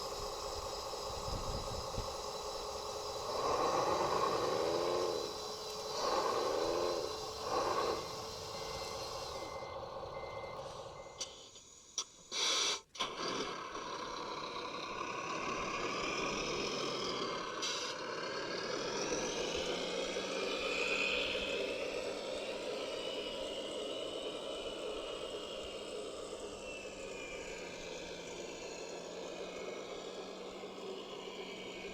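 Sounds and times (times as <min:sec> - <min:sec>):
rising hum: 0:00.0 - 0:11.2
motor and gear noise: 0:00.0 - 0:11.8, 0:13.0 - 0:31.9
reverse-warning beeper: 0:07.4 - 0:11.4.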